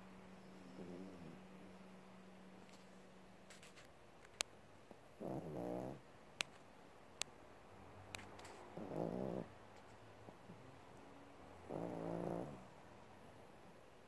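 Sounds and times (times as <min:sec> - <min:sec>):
animal snoring: 0:00.6 - 0:01.4, 0:05.2 - 0:06.0, 0:08.8 - 0:09.5, 0:11.6 - 0:12.7.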